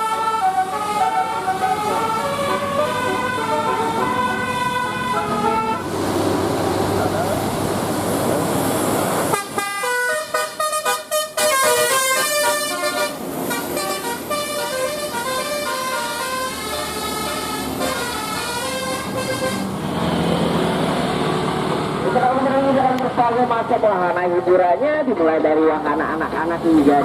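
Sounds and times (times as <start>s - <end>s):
bus horn playing melody: 0.0s - 5.9s, 9.3s - 19.8s.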